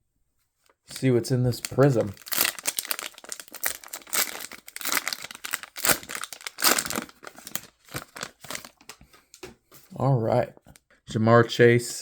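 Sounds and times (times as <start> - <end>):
plastic wrapper torn and crinkled: 0.9 - 9.5.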